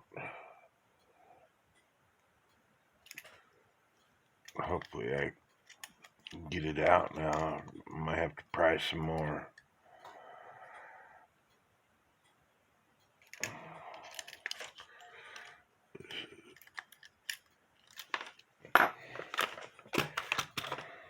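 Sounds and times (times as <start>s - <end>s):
small metallic clicks and scraping: 1.7s - 7.8s, 13.0s - 21.0s.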